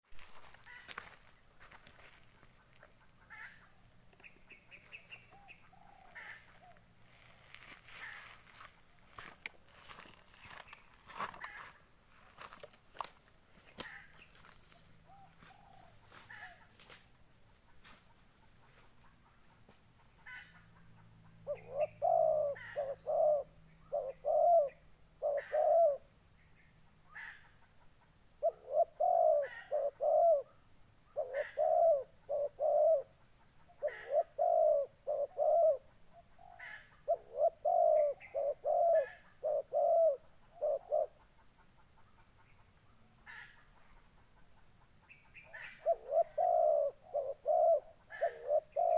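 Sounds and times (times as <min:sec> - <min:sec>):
dove cooing: 0:00.2 - 0:08.4, 0:13.0 - 0:16.6, 0:21.3 - 0:26.1, 0:28.4 - 0:41.3, 0:45.3 - 0:48.9.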